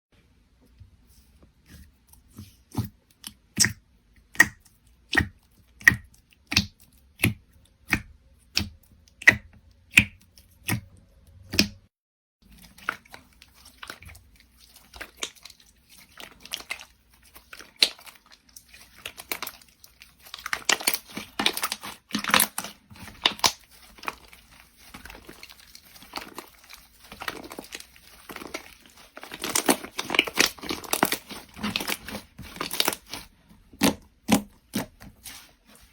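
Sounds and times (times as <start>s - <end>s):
slime crinkling squishes: 12.4s - 35.9s
slime popping: 17.4s - 35.5s.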